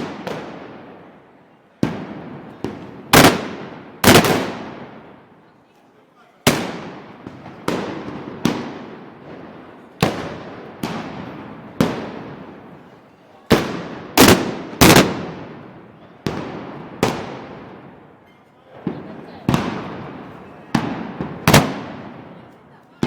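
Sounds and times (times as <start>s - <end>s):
black-powder gunshots echoing: 1.8s - 5.1s, 13.5s - 17.9s, 18.8s - 22.3s.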